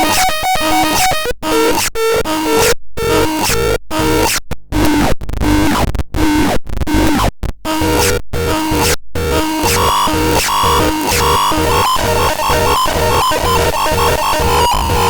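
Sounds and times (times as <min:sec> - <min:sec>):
gritty synthesizer notes: 0:03.0 - 0:15.0.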